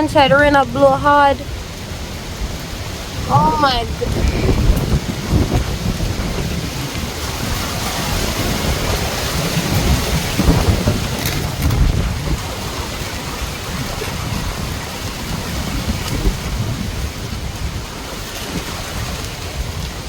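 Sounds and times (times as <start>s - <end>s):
heavy rain hissing: 0.0s - 10.6s
wind buffeting microphone: 0.0s - 20.0s.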